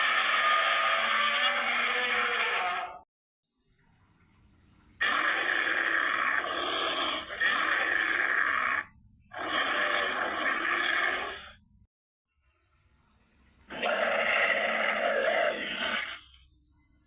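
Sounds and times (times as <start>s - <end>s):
rough roar-like creature call: 0.0s - 3.1s, 5.0s - 11.6s, 13.7s - 16.4s.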